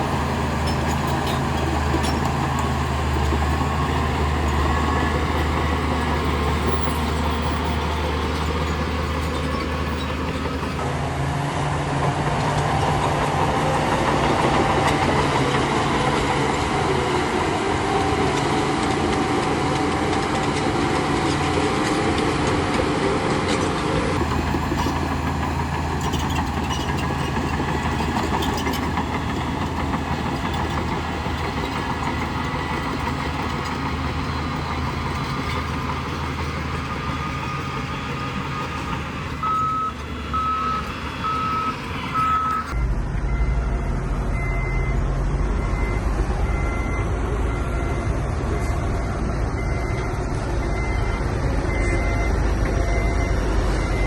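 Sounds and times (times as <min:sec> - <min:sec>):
heavy machinery diesel engine: 0:00.0 - 0:54.0
reversing alarm beeping: 0:24.3 - 0:54.0.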